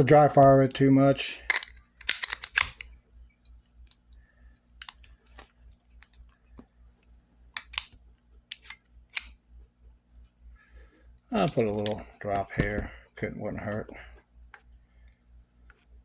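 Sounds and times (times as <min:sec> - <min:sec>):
pistol metal clicks and clacks: 0:01.4 - 0:02.9, 0:04.8 - 0:05.1, 0:07.6 - 0:09.4.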